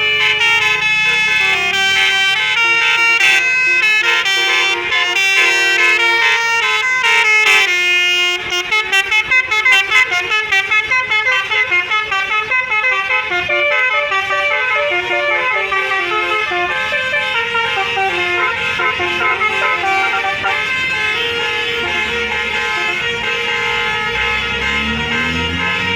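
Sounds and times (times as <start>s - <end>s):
multi-trumpet bus horn melody: 0.0s - 25.9s.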